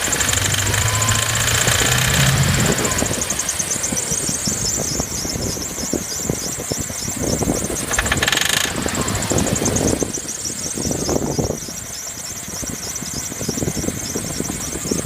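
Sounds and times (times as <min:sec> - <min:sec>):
sharp engine knocks: 0:00.0 - 0:05.6, 0:07.3 - 0:10.0
car engine running: 0:00.0 - 0:15.0
high pulley squeal: 0:00.0 - 0:15.0.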